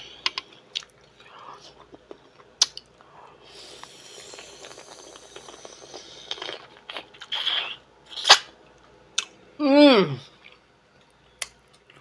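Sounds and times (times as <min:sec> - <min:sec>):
eating crunches and smacks: 0:03.7 - 0:08.5.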